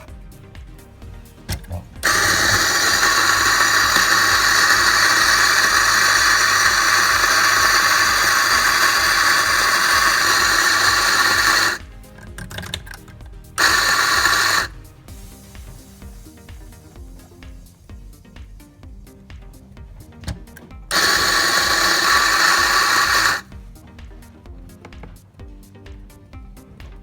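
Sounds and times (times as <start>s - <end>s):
electric coffee grinder running: 1.1s - 17.5s, 20.9s - 23.6s.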